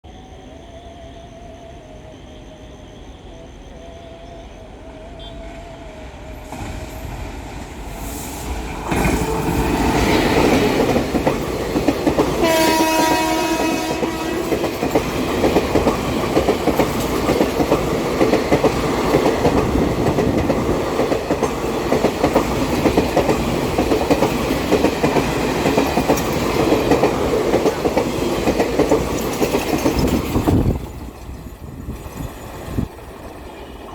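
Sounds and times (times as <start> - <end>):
train rumble: 0.1 - 33.9
train horn: 5.1 - 5.7, 12.3 - 15.0
train wheel clatter: 6.5 - 33.9.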